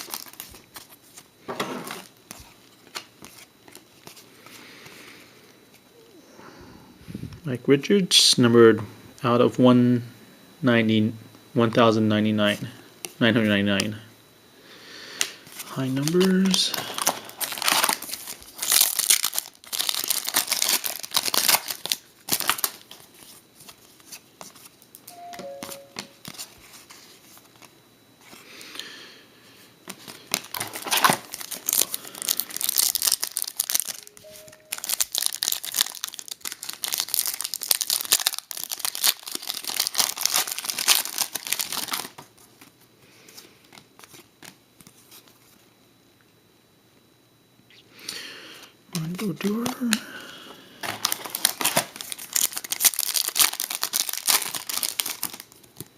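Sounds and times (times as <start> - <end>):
wrappers crinkling and tearing: 0.0 - 1.2, 15.5 - 25.0, 29.9 - 42.7, 50.8 - 55.9.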